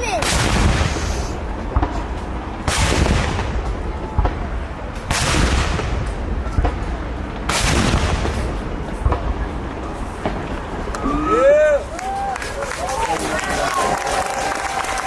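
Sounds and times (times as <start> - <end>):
cannon blasts: 0.0 - 10.9.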